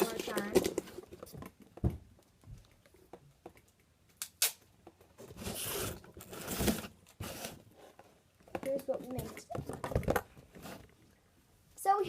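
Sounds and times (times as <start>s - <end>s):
cardboard rustling and scraping: 5.1s - 8.2s, 10.0s - 10.9s.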